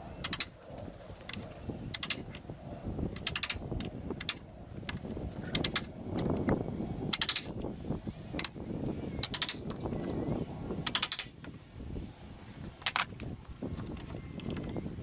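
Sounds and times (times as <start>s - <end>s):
metal clicks and rattling: 0.2s - 2.4s, 3.1s - 7.7s, 9.2s - 10.2s, 10.8s - 11.5s, 12.8s - 14.9s.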